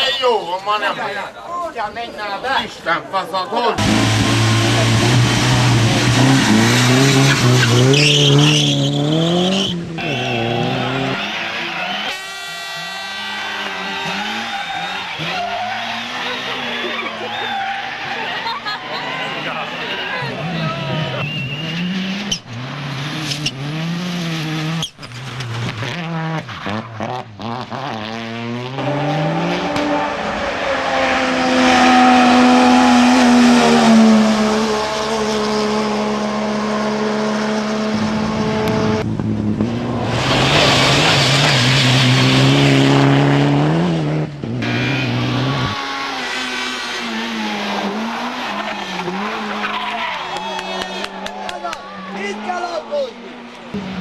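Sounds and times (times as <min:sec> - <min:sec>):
loud rush of noise: 0:03.8 - 0:07.7
racing car engine revving: 0:03.8 - 0:54.0.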